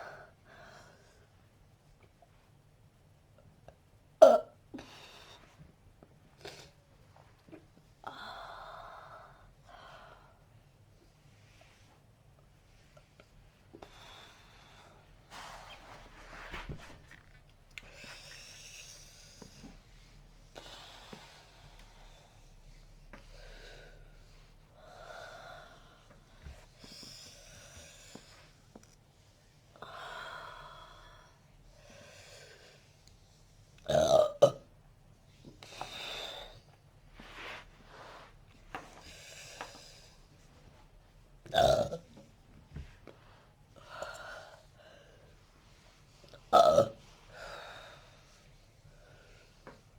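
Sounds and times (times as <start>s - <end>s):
person breathing: 20.6s - 28.6s, 43.2s - 45.8s
person burping loudly: 41.5s - 42.1s.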